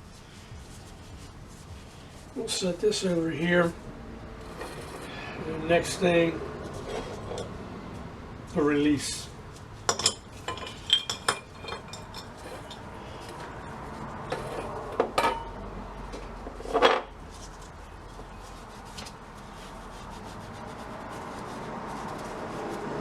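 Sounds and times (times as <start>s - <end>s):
rubbing and handling noise: 0.0s - 23.0s
metal parts knocking and clinking: 9.9s - 13.4s.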